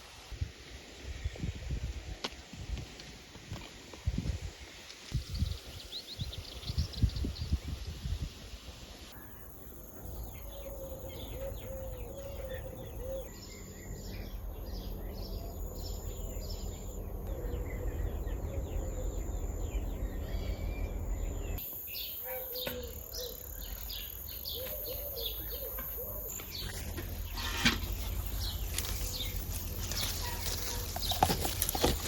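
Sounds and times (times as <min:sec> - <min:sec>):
small birds chirping: 0:10.2 - 0:32.0
low background rumble: 0:12.7 - 0:21.6.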